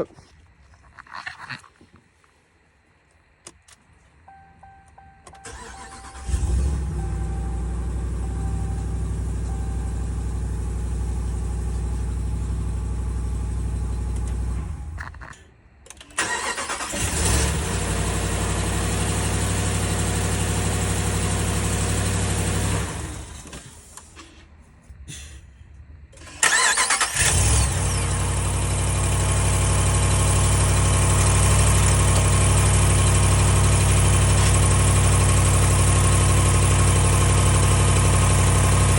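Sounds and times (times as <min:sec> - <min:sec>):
car engine idling: 0:04.3 - 0:15.0, 0:16.2 - 0:24.1, 0:26.3 - 0:38.9
starter cranking engine: 0:05.4 - 0:07.0, 0:15.9 - 0:17.6, 0:26.2 - 0:28.4
engine revving: 0:05.5 - 0:11.4, 0:16.2 - 0:23.5, 0:26.4 - 0:38.9.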